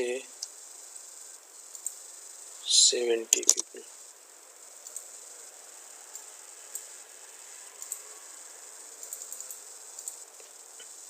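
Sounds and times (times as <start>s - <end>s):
faint microphone hiss: 0.0s - 11.0s
faint computer clicks: 3.3s - 3.8s.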